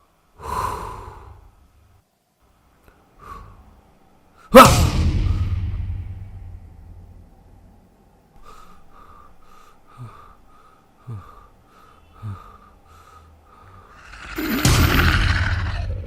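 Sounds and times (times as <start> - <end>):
echoing tail of a loud hit: 4.7 - 7.1, 14.0 - 16.0
short deep falling sounds: 14.0 - 16.0.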